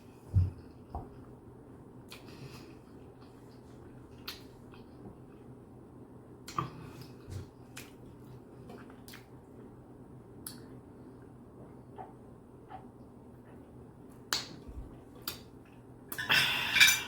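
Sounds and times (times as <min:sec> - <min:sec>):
steady low hum: 0:00.0 - 0:17.0
mouth chewing with wet smacks: 0:02.1 - 0:05.4, 0:06.4 - 0:09.7, 0:11.9 - 0:15.9.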